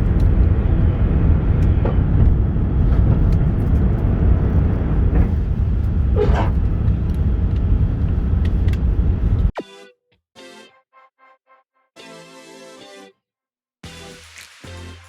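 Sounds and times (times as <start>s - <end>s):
jet engine roar in cabin: 0.0s - 9.5s.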